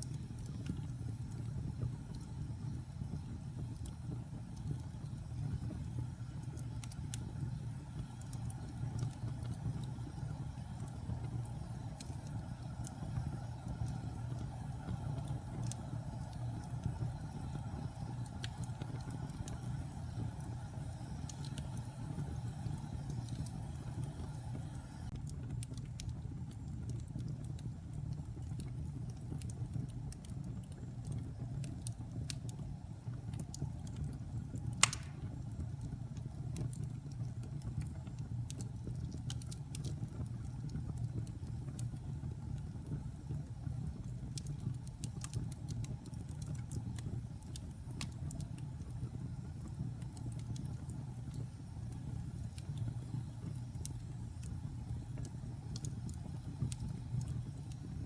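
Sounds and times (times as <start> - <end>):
fire crackles: 0.0 - 58.0
wood fire burning: 0.0 - 58.0
sharp pop of fire: 34.8 - 35.5.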